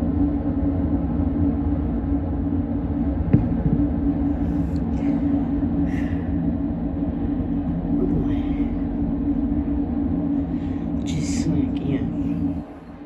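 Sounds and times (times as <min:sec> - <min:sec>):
freight train rumbling past: 0:03.1 - 0:13.0.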